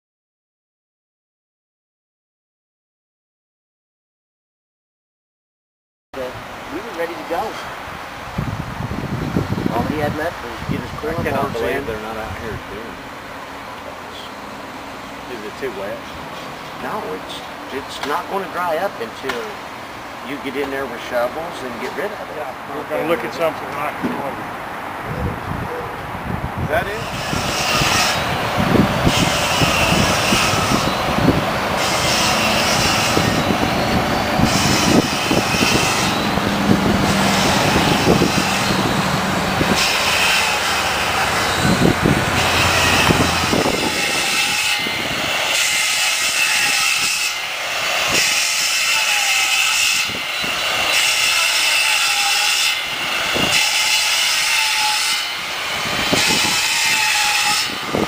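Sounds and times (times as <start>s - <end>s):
heavy machinery engine rumble: 28.2s - 44.0s.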